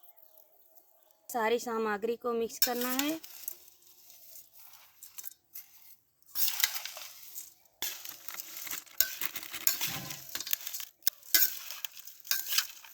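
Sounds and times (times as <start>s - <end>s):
puffed rice rustling: 0.0s - 1.1s, 2.6s - 12.9s.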